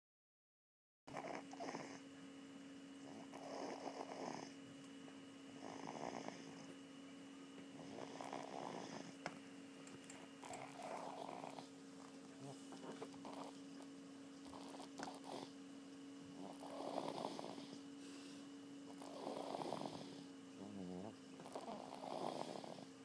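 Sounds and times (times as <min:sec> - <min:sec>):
person snoring: 0:01.1 - 0:02.0, 0:03.0 - 0:04.6, 0:05.6 - 0:06.7, 0:07.8 - 0:09.2, 0:10.4 - 0:11.7, 0:14.4 - 0:15.6, 0:16.3 - 0:22.9
faint hum: 0:01.1 - 0:23.0.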